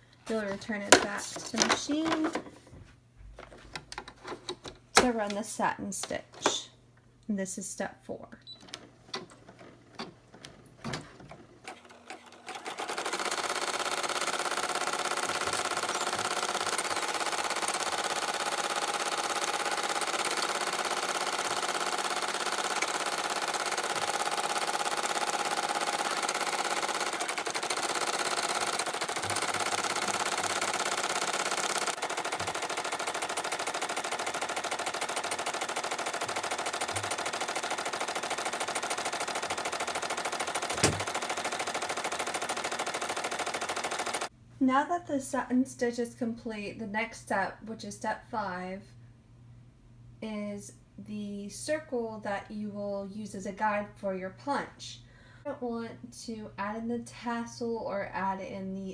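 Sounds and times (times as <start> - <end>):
embroidery machine needle rattle: 8.6 - 44.3.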